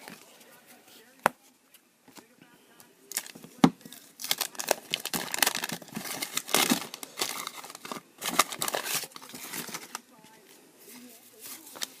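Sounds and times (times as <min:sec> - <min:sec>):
wax paper wrapper crinkling: 0:03.1 - 0:12.0.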